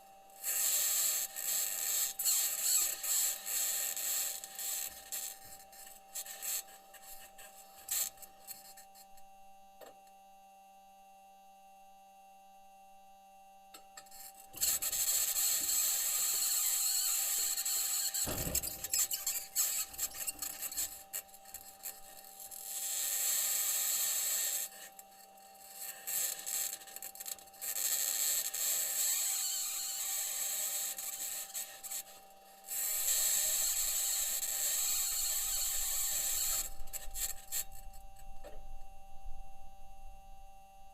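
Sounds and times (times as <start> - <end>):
steady hum: 31.4 - 40.9.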